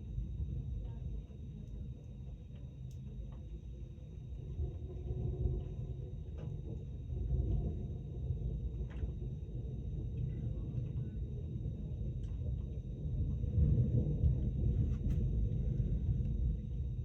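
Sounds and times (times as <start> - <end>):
faint raindrop ticks: 0.8 - 4.8, 5.5 - 15.5
thunder rumbling: 13.0 - 17.0.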